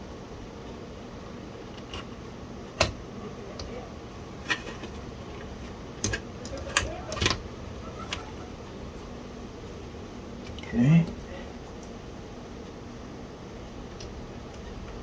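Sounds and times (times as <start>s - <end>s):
low background hum: 0.0s - 15.0s
clicks and knocks of drive parts: 1.7s - 9.8s.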